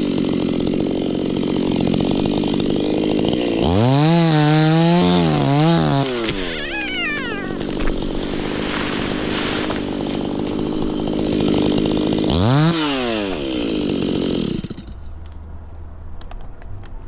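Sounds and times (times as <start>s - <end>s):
chainsaw running at high revs: 0.0s - 15.0s.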